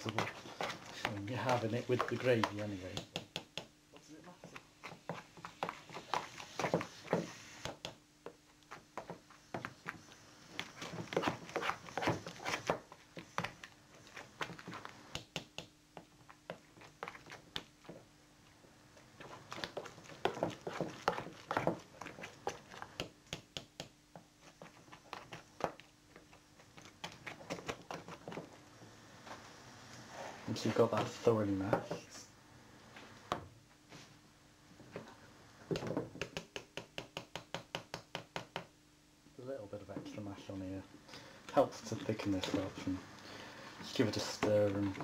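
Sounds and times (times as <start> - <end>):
potato masher knocking and squelching: 19.3 - 23.9.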